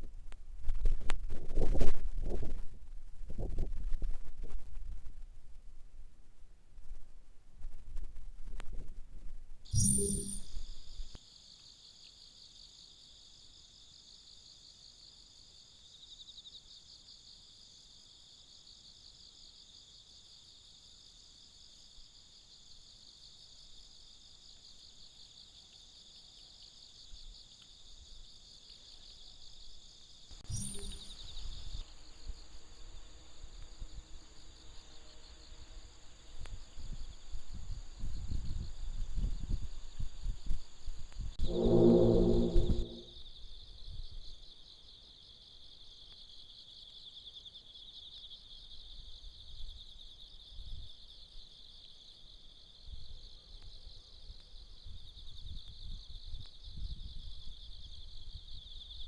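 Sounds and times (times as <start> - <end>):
insects chirring: 9.7 - 59.0
low rumbling noise: 41.4 - 43.1.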